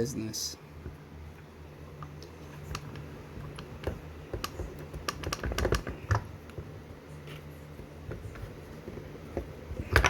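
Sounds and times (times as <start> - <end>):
small hard clicks and taps: 2.0 - 6.7.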